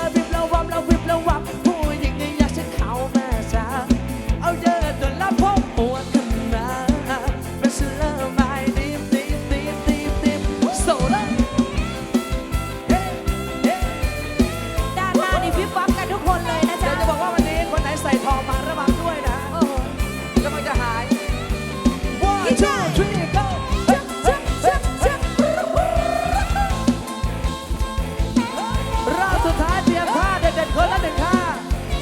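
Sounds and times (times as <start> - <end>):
fast drum beat: 0.0 - 32.0
live band music: 0.0 - 32.0
sliding lead melody: 0.0 - 32.0.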